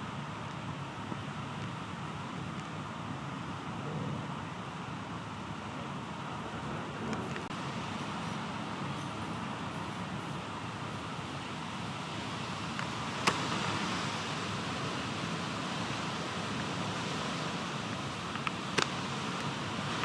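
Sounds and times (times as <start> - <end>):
steady rain: 0.0 - 20.0.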